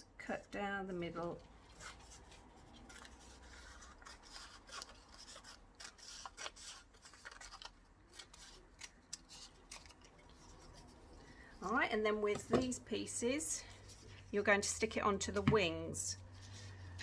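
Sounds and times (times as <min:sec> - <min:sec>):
scissors snipping paper: 0:01.7 - 0:11.0.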